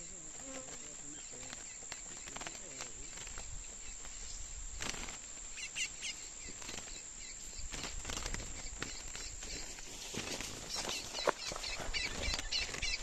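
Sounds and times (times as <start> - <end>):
high insect buzz: 0.0 - 13.0
finch chirping: 5.5 - 7.7, 10.6 - 13.0.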